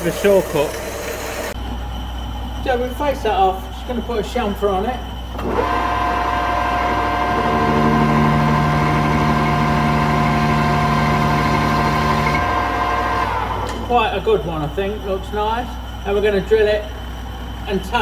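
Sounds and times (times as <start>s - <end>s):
metal lathe whining: 0.0s - 1.6s, 5.1s - 14.2s.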